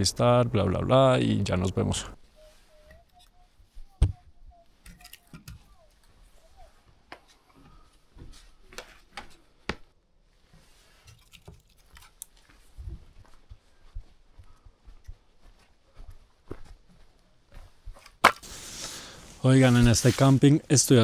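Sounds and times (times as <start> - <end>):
gear being handled: 18.2 - 20.5.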